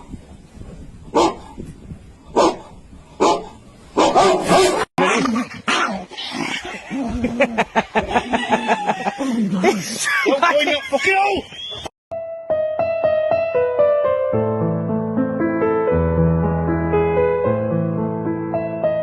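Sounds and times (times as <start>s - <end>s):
dog barking: 1.1s - 1.5s, 2.4s - 4.9s.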